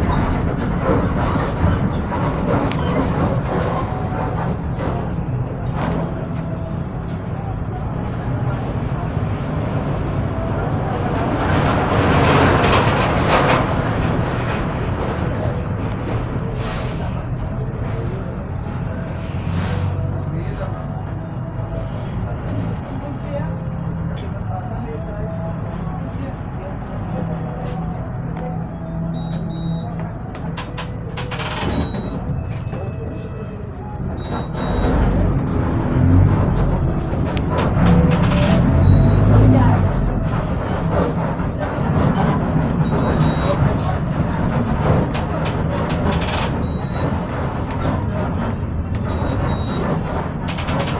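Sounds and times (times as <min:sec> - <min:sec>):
rattling and clattering: 0:00.0 - 0:06.3, 0:34.2 - 0:50.9
bus diesel engine rumble: 0:00.0 - 0:50.9
road noise: 0:00.0 - 0:50.9
air brake hiss: 0:16.6 - 0:17.2, 0:19.2 - 0:20.0.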